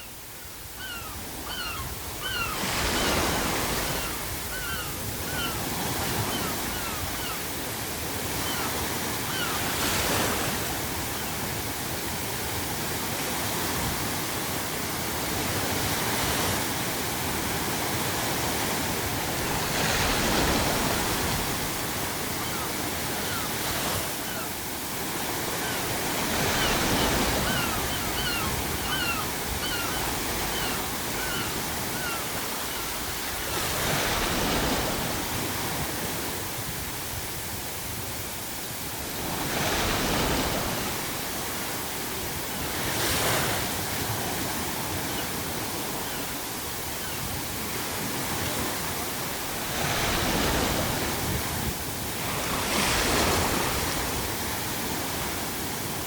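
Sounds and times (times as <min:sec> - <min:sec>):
sea waves breaking: 0:00.0 - 0:38.0, 0:38.8 - 0:56.0
seagulls calling: 0:00.8 - 0:07.6, 0:08.2 - 0:11.4, 0:19.4 - 0:24.7, 0:25.3 - 0:34.8.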